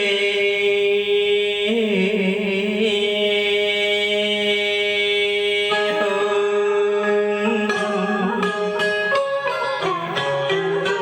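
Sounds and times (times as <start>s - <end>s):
man singing a held note: 3.0s - 8.7s
musical accompaniment: 5.7s - 11.0s.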